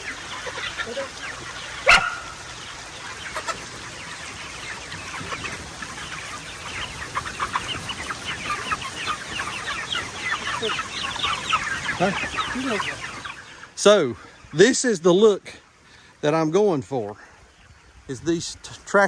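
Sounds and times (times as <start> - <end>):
chickens clucking and cheeping: 0.0 - 19.0.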